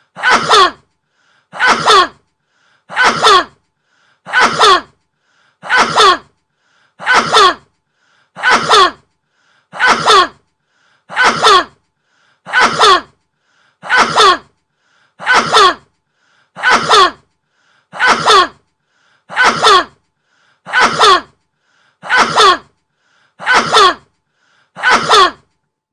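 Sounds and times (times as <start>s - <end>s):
person sneezing: 0.0s - 0.9s, 1.5s - 2.2s, 2.9s - 3.6s, 4.3s - 5.0s, 5.6s - 6.4s, 7.0s - 7.7s, 8.4s - 9.1s, 9.7s - 10.4s, 11.1s - 11.8s, 12.5s - 13.2s, 13.8s - 14.6s, 15.2s - 15.9s, 16.6s - 17.3s, 17.9s - 18.6s, 19.3s - 20.0s, 20.7s - 21.4s, 22.0s - 22.8s, 23.4s - 24.1s, 24.8s - 25.5s.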